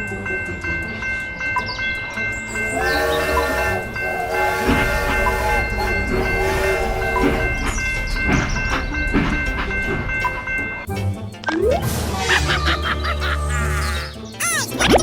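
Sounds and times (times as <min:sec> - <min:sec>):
sustained pitched tone: 0:00.0 - 0:11.9
background music: 0:00.0 - 0:15.0
steady low rumble: 0:04.7 - 0:11.2.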